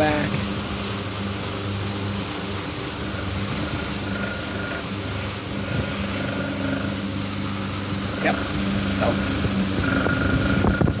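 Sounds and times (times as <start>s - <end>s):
faint high whine: 0.0s - 11.0s
table fan running: 0.0s - 11.0s.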